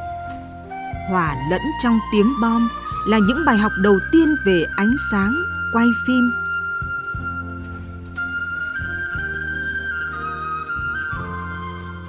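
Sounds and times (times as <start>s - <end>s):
flute melody: 0.0s - 12.0s.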